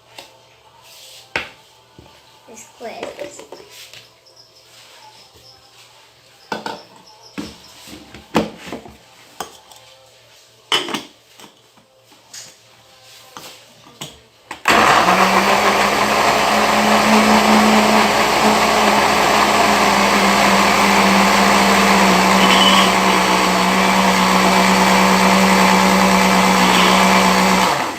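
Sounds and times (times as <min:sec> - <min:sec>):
electric blender running: 0:14.7 - 0:27.9.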